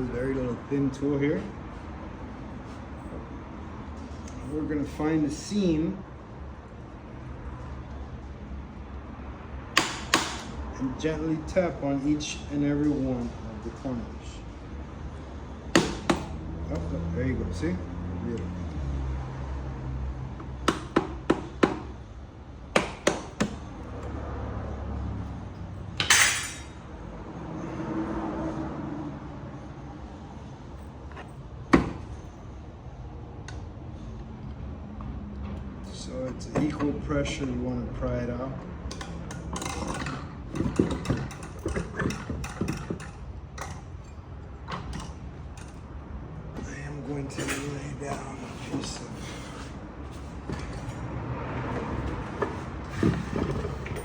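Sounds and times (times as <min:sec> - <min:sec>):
metal clatter: 0:26.0 - 0:26.8.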